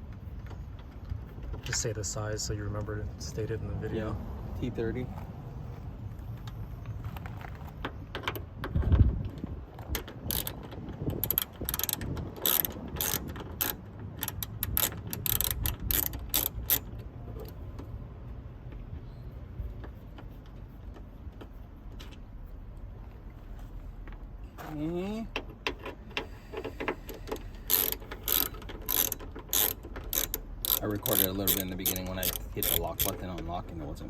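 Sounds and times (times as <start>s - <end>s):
ratchet wrench clicking: 9.9s - 17.0s, 26.2s - 33.5s.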